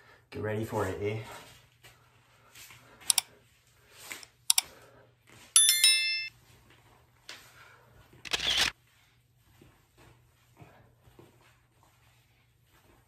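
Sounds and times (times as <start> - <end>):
metallic ringing tones: 5.6 - 6.3
small clicks: 8.3 - 8.7.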